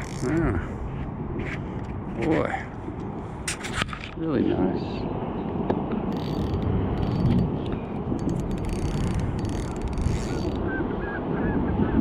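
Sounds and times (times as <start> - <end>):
fishing reel clicking: 0.0 - 0.4, 6.1 - 10.6.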